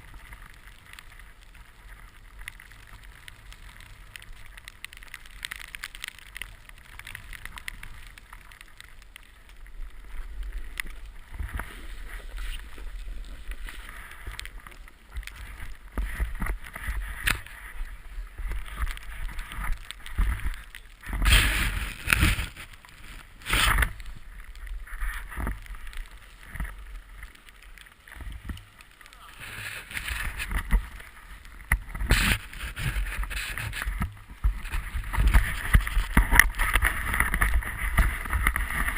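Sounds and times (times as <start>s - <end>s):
snowboard scraping through snow: 9.9s - 27.2s, 29.2s - 38.9s.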